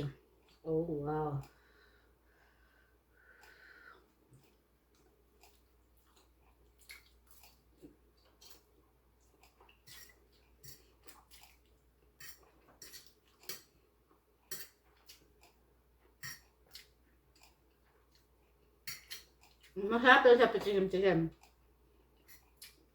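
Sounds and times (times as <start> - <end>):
chewing: 3.3 - 19.8, 21.3 - 22.9.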